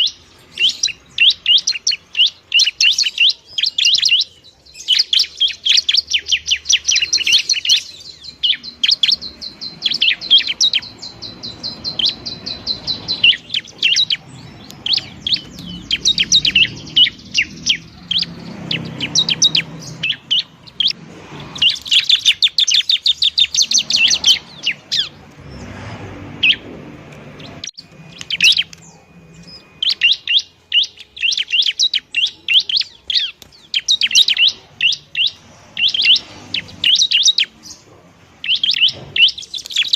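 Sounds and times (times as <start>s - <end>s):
bird singing high chirps: 0.0s - 39.9s
thin steady high tone: 27.4s - 37.9s.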